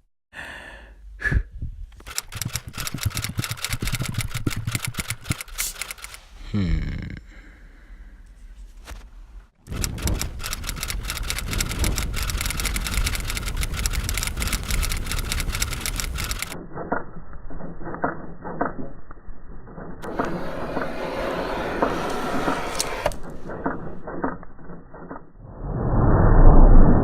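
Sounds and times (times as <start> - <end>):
typewriter typing: 2.0 - 6.2, 9.6 - 16.6.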